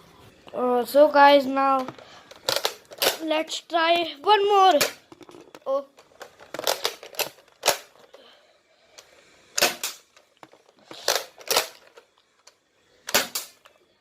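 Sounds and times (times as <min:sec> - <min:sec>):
toy dart blaster clicks and snaps: 0:09.6 - 0:10.1, 0:13.1 - 0:13.7.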